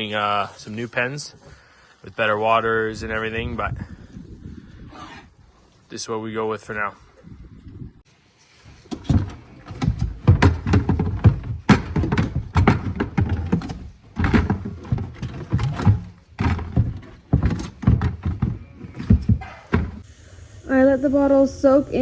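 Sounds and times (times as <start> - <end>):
knocking and clattering thuds: 9.0 - 20.0.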